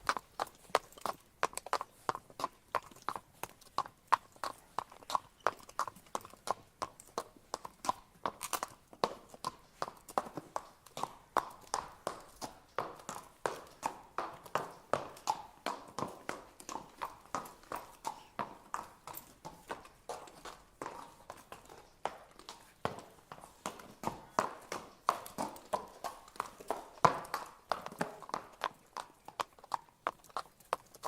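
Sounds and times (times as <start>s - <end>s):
horse hooves clip-clopping: 0.0s - 31.0s.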